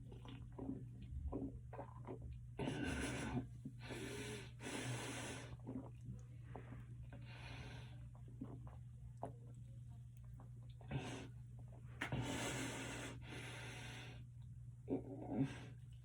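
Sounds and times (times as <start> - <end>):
person breathing hard: 2.6 - 5.6, 12.0 - 14.2.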